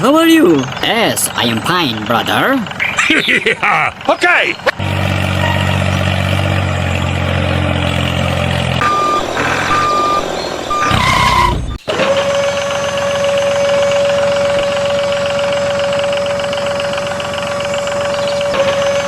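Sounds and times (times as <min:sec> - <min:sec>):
truck engine idling: 0:00.0 - 0:19.0
truck reversing alarm beeping: 0:05.2 - 0:19.0.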